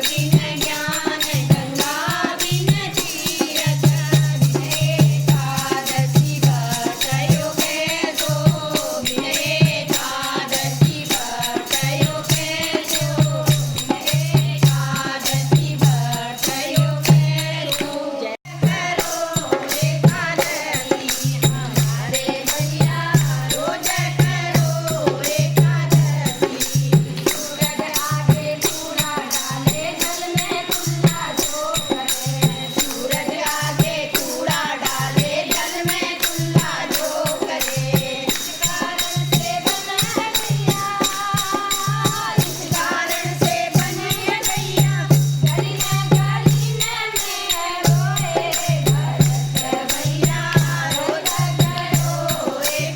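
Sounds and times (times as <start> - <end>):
drum keeping steady beat: 0.0 - 52.9
hand percussion: 0.0 - 52.9
voices singing a chant: 0.0 - 52.9.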